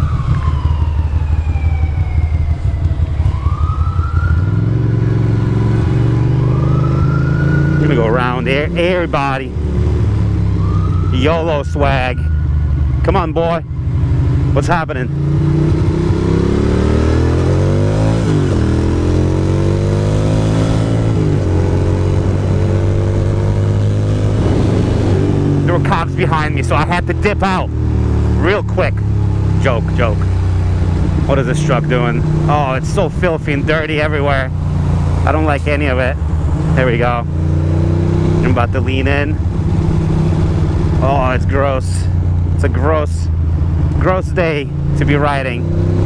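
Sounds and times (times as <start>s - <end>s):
wailing siren: 0.0s - 8.6s, 9.6s - 12.9s, 15.8s - 26.6s
motorcycle engine running: 0.0s - 46.0s.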